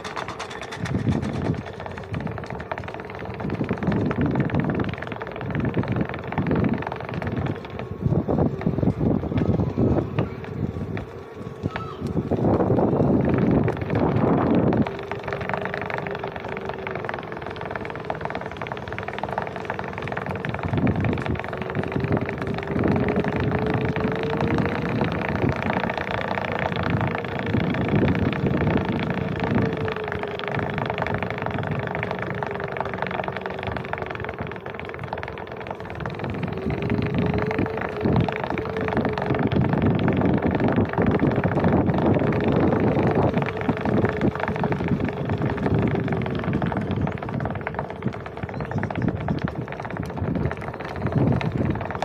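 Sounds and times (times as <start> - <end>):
electric hub motor whining: 0.0 - 52.0
wind buffeting microphone: 0.0 - 52.0.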